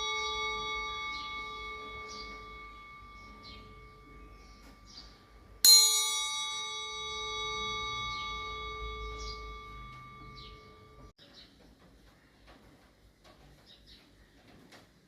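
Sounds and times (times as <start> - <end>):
bronze utensil ringing: 0.0 - 11.1.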